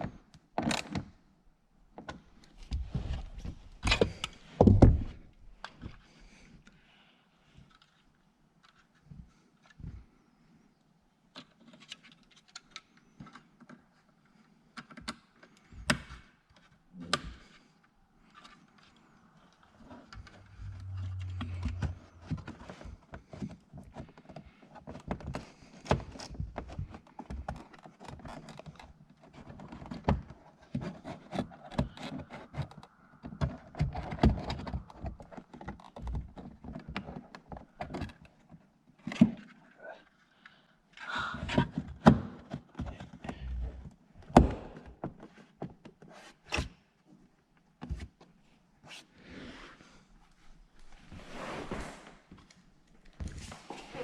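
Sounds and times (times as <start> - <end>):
low hum: 20.2 - 22.6.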